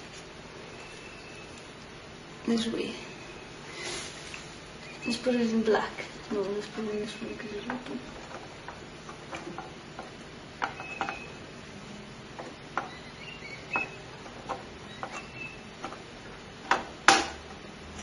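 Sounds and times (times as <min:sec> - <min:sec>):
computer parts clicking and tapping: 0:07.5 - 0:11.4.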